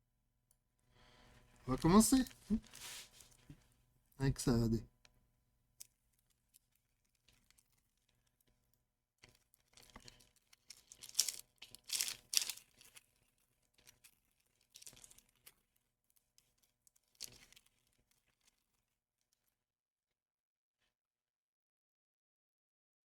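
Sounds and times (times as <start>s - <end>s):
card packaging torn and crinkled: 10.7s - 13.0s.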